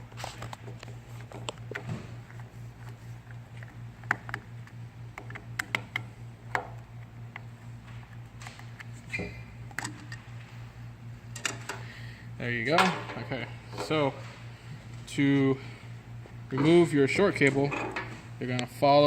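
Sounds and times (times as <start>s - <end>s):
low electrical hum: 0.0s - 19.0s
screwdriver clicks and taps: 5.1s - 6.7s.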